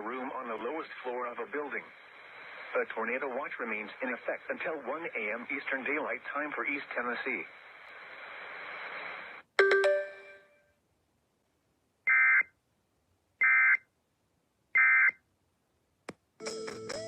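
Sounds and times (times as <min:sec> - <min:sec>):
music: 0:16.4 - 0:17.0.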